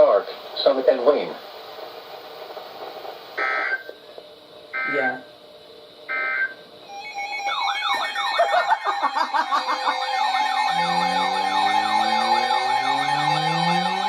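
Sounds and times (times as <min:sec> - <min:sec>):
sirens wailing: 0:06.1 - 0:14.0
slow siren rising in pitch: 0:06.1 - 0:14.0.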